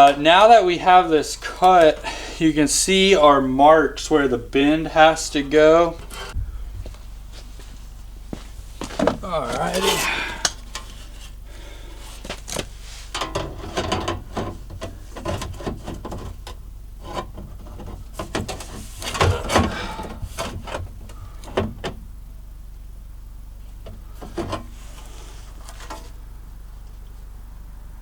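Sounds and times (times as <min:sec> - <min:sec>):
sheet steel knocking and scraping: 0:12.4 - 0:21.0.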